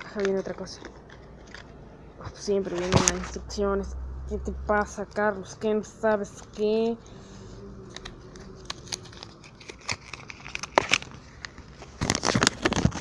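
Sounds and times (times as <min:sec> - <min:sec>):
paper rustling: 0:00.0 - 0:03.4, 0:06.3 - 0:13.0
cardboard box crinkling: 0:07.9 - 0:13.0.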